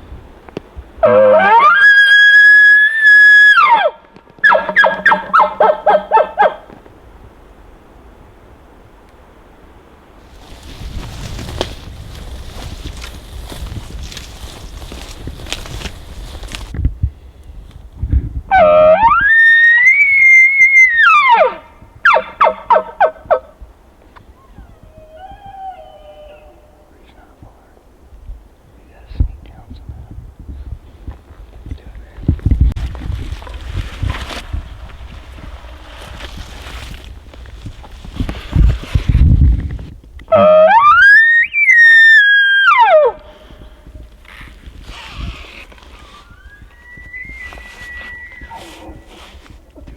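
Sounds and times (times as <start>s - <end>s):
bull elk bugling: 1.0s - 6.9s, 18.5s - 27.9s, 40.2s - 49.9s.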